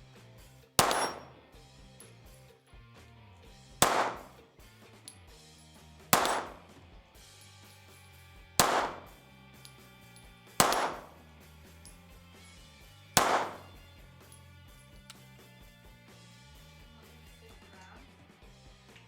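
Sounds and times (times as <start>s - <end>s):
pistol shots: 0.8s - 1.4s, 3.8s - 4.4s, 6.2s - 6.8s, 8.6s - 9.2s, 10.6s - 11.2s, 13.2s - 13.8s
quiet background music: 0.8s - 2.7s, 3.8s - 4.6s, 5.2s - 6.8s, 8.6s - 9.3s, 10.6s - 11.2s, 13.2s - 15.5s.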